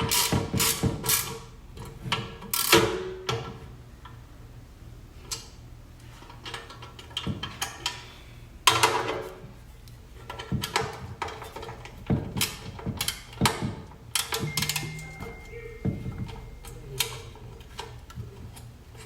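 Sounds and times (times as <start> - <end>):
low steady hum: 11.4 - 19.0.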